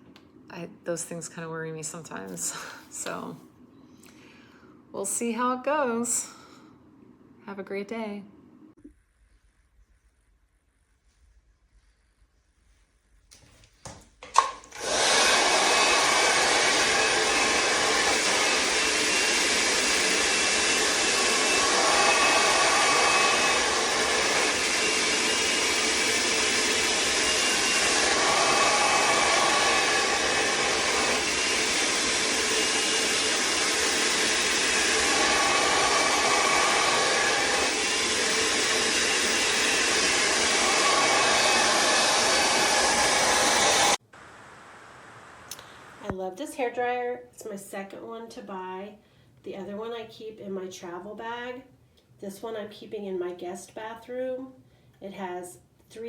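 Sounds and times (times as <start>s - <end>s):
hair dryer blowing: 13.9s - 44.0s.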